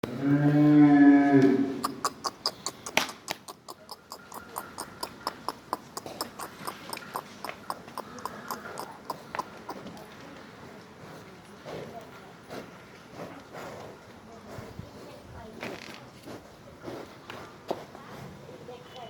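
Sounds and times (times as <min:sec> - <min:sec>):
cow lowing: 0:00.1 - 0:10.0.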